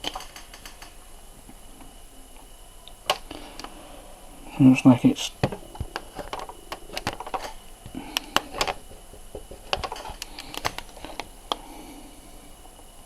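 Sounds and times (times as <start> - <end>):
handling clicks and taps: 5.4 - 11.6.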